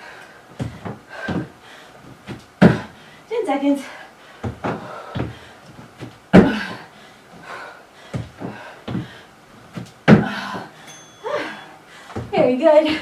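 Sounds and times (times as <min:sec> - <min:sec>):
soft thumps: 0:00.6 - 0:03.0, 0:04.4 - 0:06.8, 0:08.1 - 0:11.0, 0:12.0 - 0:13.0
landing thuds on box: 0:02.2 - 0:02.9, 0:06.0 - 0:06.7, 0:09.7 - 0:10.7.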